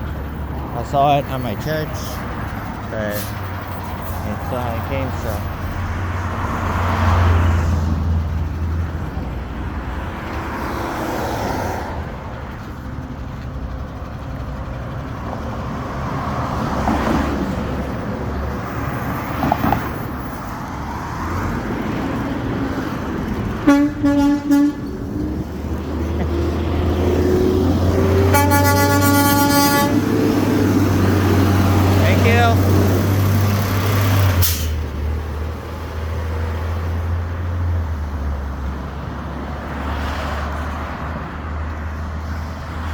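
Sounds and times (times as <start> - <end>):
truck horn toots: 23.6 - 25.0, 27.9 - 30.2
long horn blast: 23.6 - 25.2, 27.9 - 30.3.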